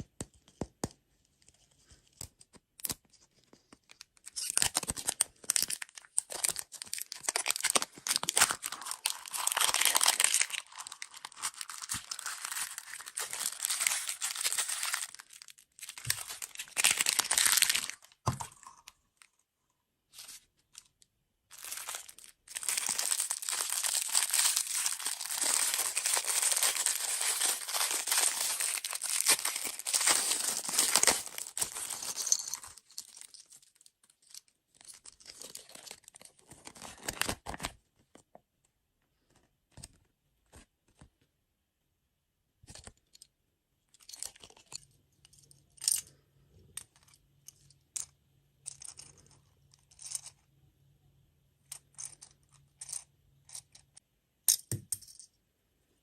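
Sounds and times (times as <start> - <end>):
small clicks and taps: 0.0 - 4.0
packaging tearing and crinkling: 4.2 - 18.2, 21.5 - 33.7, 34.8 - 37.7.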